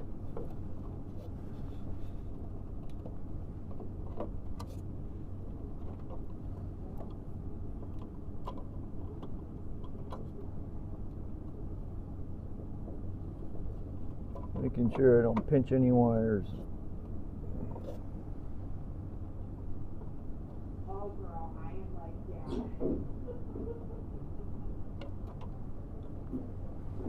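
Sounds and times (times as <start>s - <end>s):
steady low rumble: 10.4s - 27.0s
light clicks and taps: 14.3s - 15.7s.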